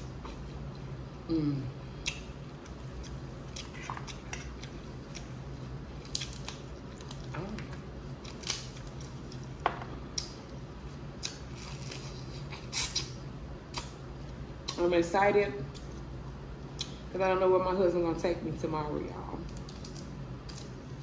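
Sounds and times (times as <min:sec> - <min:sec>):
low steady hum: 0:00.0 - 0:21.0
crab shell cracking: 0:08.2 - 0:09.1.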